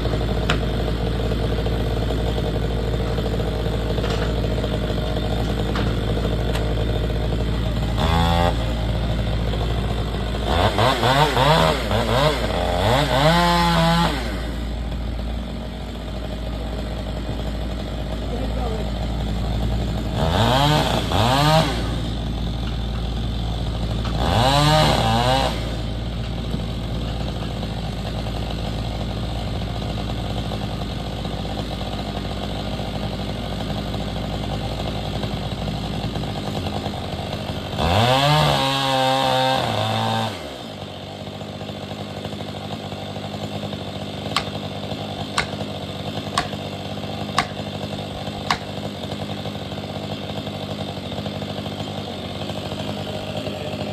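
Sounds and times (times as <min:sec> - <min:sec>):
chainsaw idling and revving: 0:00.0 - 0:53.9
sharp knocks: 0:44.3 - 0:44.6, 0:45.4 - 0:45.6, 0:46.4 - 0:46.6, 0:47.4 - 0:47.6, 0:48.5 - 0:48.8.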